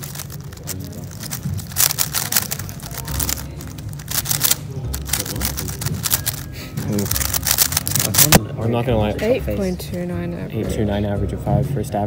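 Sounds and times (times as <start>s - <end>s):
speed cube plastic clicking: 0.0s - 8.4s.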